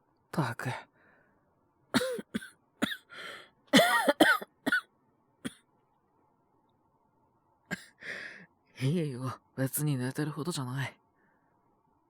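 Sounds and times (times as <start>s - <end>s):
man coughing: 2.0s - 3.1s, 3.8s - 5.6s.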